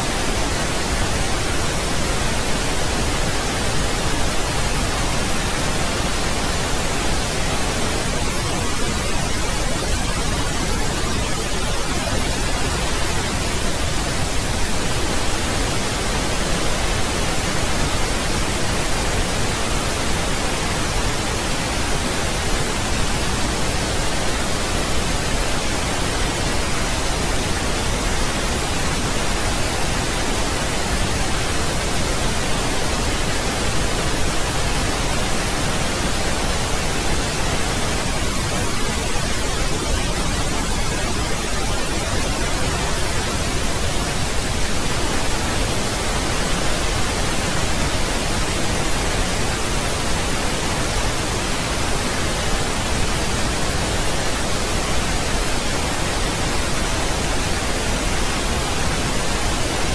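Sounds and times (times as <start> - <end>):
steady pink noise hiss: 0.0 - 59.9.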